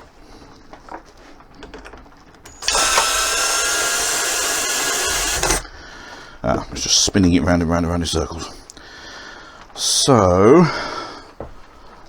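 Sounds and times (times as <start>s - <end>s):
power drill running: 2.5s - 5.7s.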